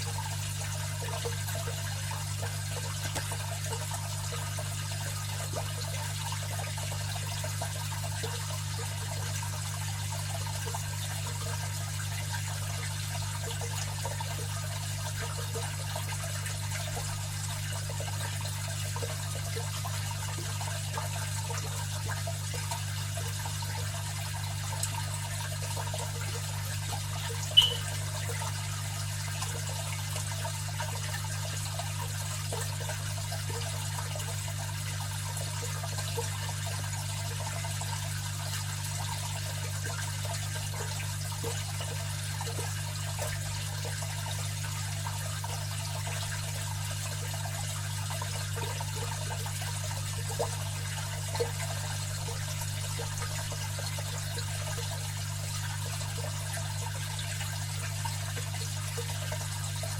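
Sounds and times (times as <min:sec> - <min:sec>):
aquarium filter water trickling: 0:00.0 - 0:59.9
low steady hum: 0:23.4 - 0:33.3
sharp water drip: 0:24.3 - 0:29.6.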